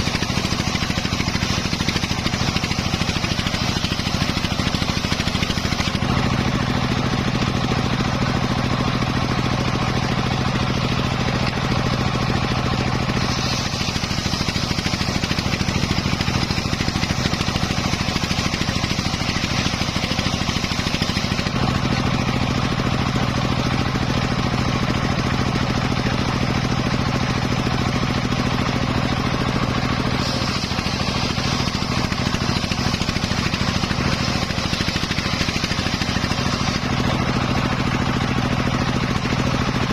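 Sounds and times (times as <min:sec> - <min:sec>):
engine-driven circular saw sawing wood: 0:00.0 - 0:39.9.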